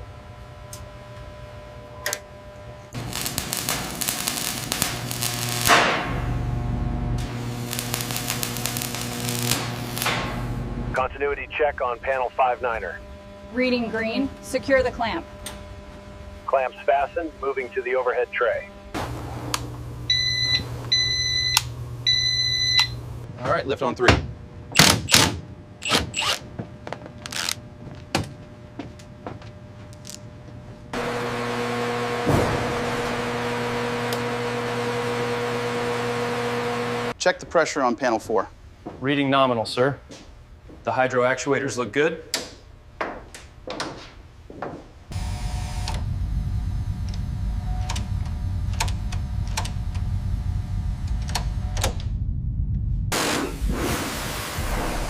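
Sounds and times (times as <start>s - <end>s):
low mechanical rumble: 0.0s - 37.2s, 44.3s - 55.0s
machine hum: 0.0s - 37.2s, 44.3s - 55.0s
sharp clicks: 47.8s - 50.1s.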